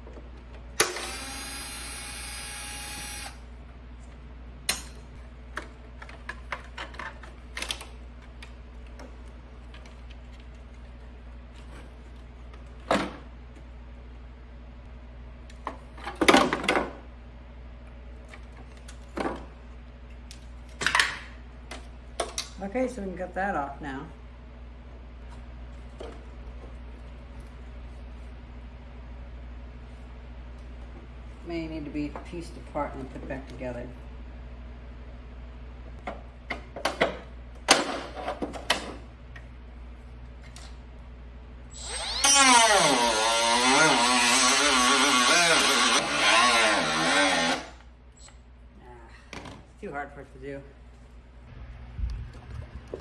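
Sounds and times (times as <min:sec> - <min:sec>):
power tool motor running: 0:00.8 - 0:03.4, 0:41.7 - 0:47.8.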